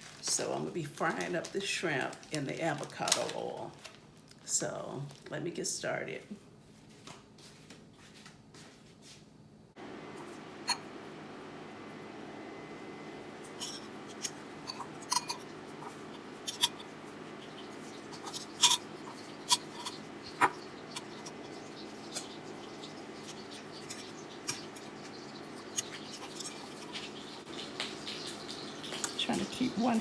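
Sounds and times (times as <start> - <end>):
shrimp frying in oil: 13.4 - 30.0
sharp crackles and pops: 16.1 - 30.0.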